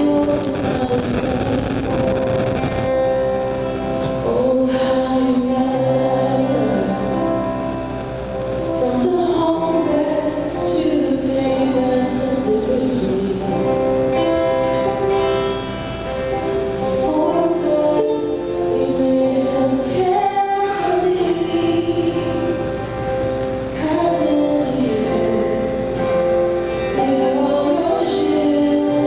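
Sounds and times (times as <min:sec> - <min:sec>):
men and women singing: 0:00.0 - 0:01.9, 0:04.0 - 0:07.8, 0:08.7 - 0:14.0, 0:16.9 - 0:29.0.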